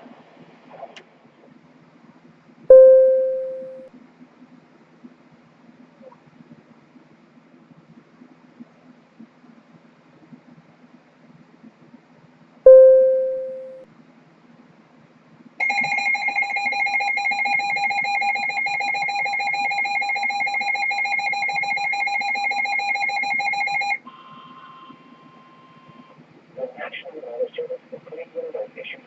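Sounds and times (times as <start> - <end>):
two-tone emergency alert alarm: 2.7 - 3.8, 15.6 - 24.0.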